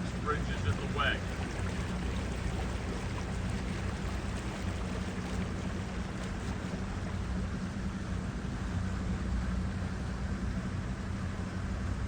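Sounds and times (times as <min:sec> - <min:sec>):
boat motor running: 0:00.0 - 0:09.0
water and air rushing: 0:00.0 - 0:09.1.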